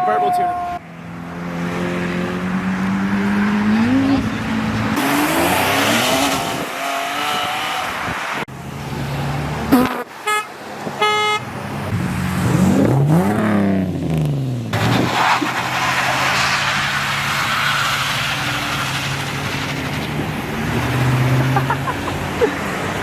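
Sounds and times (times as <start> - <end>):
car horn tooting: 0.0 - 0.8, 9.7 - 11.5
car engines revving: 0.0 - 23.0.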